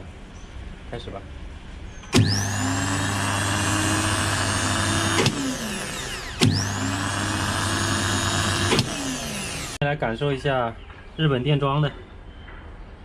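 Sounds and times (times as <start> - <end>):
starter motor whining: 2.1 - 9.8.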